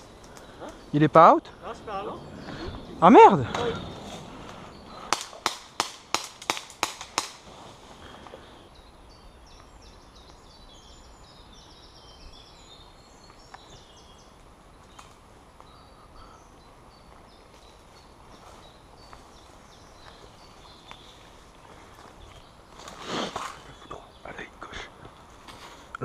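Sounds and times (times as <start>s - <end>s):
birds chirping faintly: 0.0s - 26.0s.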